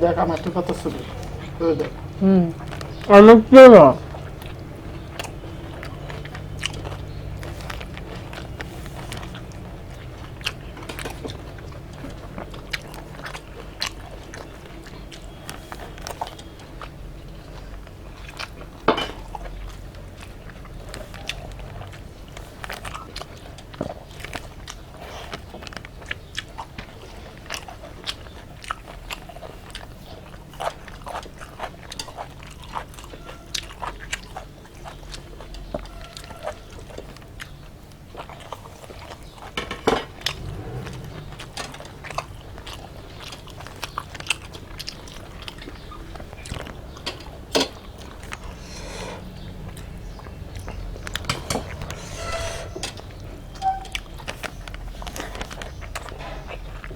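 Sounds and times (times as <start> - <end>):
chewing and biting food: 0.0 - 52.0, 52.8 - 56.9
mouth clicks and crunches: 0.1 - 52.0, 52.6 - 56.9.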